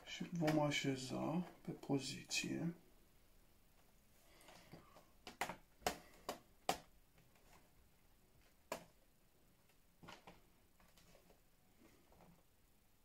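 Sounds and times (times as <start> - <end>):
laptop cover clicks and taps: 5.2 - 6.9.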